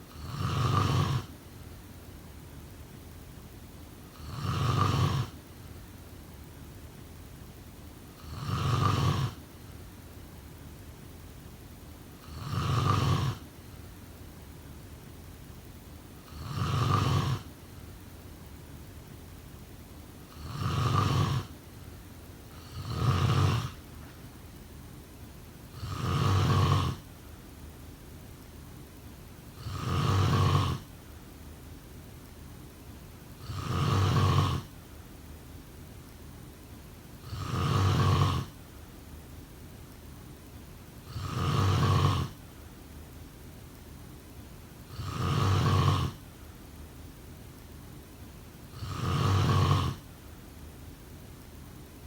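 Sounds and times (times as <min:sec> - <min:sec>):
faint steady hiss: 0:00.0 - 0:52.0
person snoring: 0:00.1 - 0:01.3, 0:04.2 - 0:05.4, 0:08.2 - 0:09.4, 0:12.2 - 0:13.5, 0:16.3 - 0:17.5, 0:20.3 - 0:21.5, 0:22.5 - 0:23.8, 0:25.7 - 0:27.0, 0:29.6 - 0:30.9, 0:33.4 - 0:34.7, 0:37.2 - 0:38.5, 0:41.0 - 0:42.4, 0:44.9 - 0:46.2, 0:48.7 - 0:50.0.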